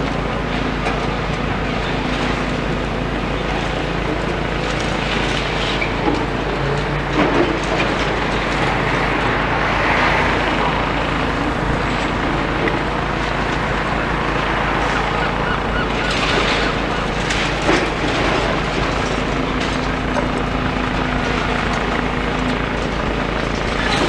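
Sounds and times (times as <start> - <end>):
excavator engine: 0.0 - 24.0
rubble scraping and clattering: 16.1 - 20.6.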